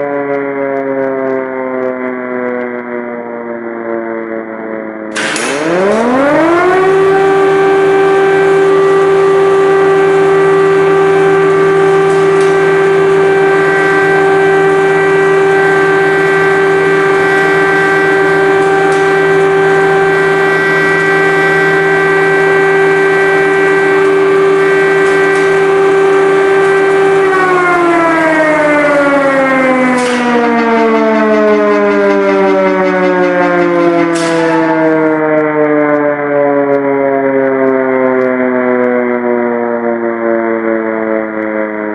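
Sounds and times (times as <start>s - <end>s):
air-raid siren wailing: 0.0s - 41.9s.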